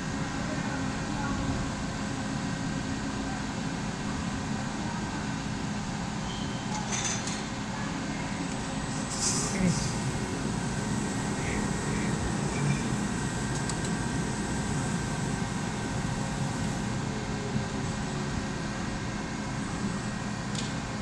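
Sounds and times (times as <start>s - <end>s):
faint whining tones: 9.0s - 16.8s
lathe humming: 9.0s - 17.2s.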